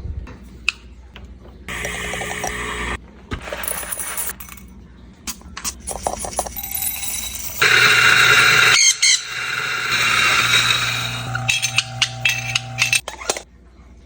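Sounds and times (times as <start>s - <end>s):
coffee machine whirring: 1.7s - 4.3s, 5.8s - 13.4s
coffee gear clinks and taps: 5.3s - 7.9s, 9.9s - 13.0s.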